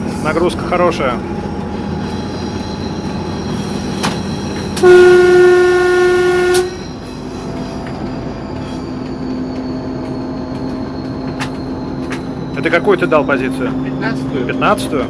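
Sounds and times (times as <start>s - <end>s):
diesel engine under heavy load: 0.0s - 7.0s, 9.6s - 15.0s
locomotive horn blast: 4.6s - 6.9s
turbocharger whistle: 4.8s - 7.0s.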